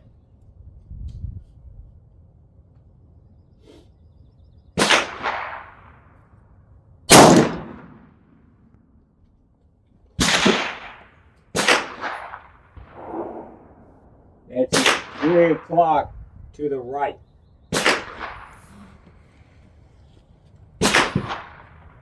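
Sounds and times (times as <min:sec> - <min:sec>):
gunshots with echo: 0:04.8 - 0:06.0, 0:07.1 - 0:08.3, 0:10.2 - 0:16.0, 0:17.7 - 0:18.9, 0:20.8 - 0:22.0.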